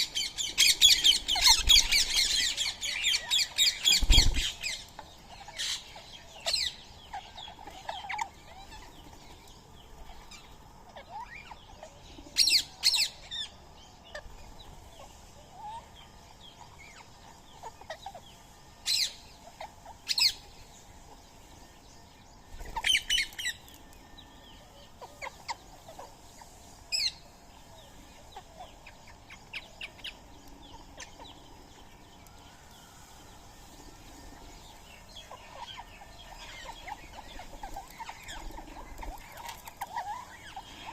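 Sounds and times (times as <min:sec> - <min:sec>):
parakeets screeching: 0:00.0 - 0:09.0, 0:35.2 - 0:40.9.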